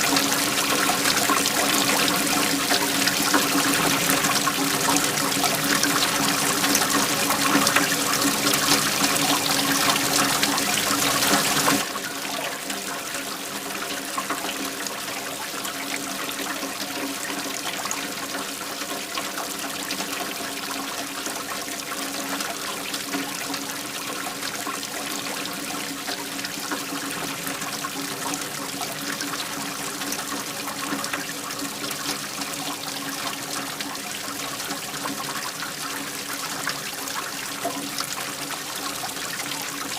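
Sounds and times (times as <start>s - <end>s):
waterfall rushing: 0.0s - 11.9s.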